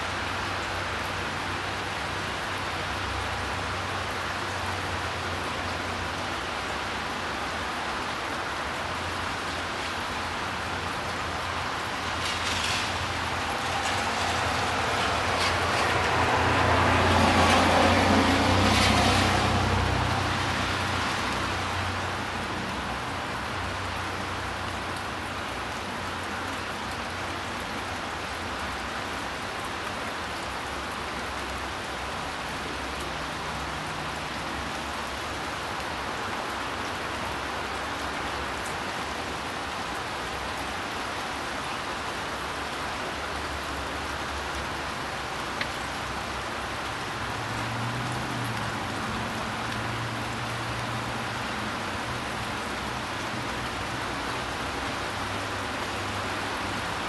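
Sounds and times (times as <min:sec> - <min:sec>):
steady rain falling: 0:00.0 - 0:57.0
passing vehicle rumble: 0:10.5 - 0:23.2, 0:43.6 - 0:57.0.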